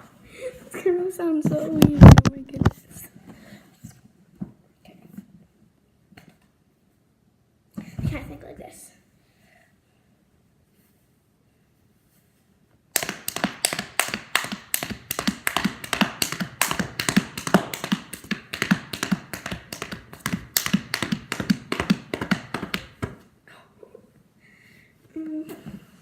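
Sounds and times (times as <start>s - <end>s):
rapid rhythmic taps like galloping: 13.0s - 23.2s.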